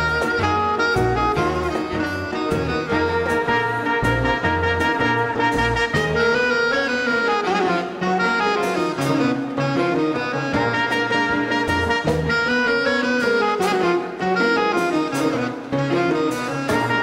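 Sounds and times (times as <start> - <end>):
dance orchestra playing latin tune: 0.0 - 17.0.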